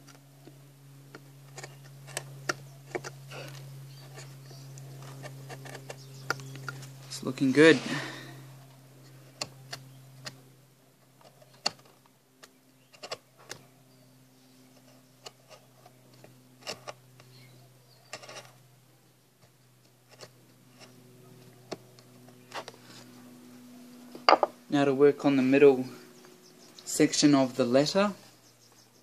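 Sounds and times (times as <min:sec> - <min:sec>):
steady low hum: 0:00.0 - 0:29.0
knife cutting wood chips: 0:01.1 - 0:07.8, 0:14.7 - 0:17.4, 0:18.0 - 0:18.6.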